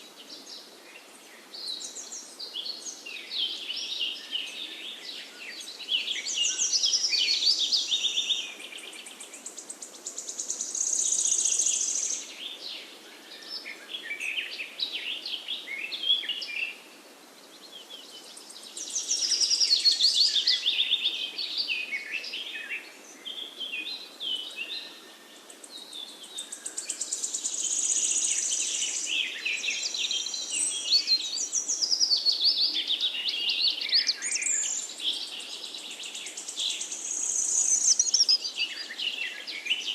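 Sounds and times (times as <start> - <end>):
faint steady hiss: 0.0 - 39.9
songbirds trilling: 17.5 - 39.9.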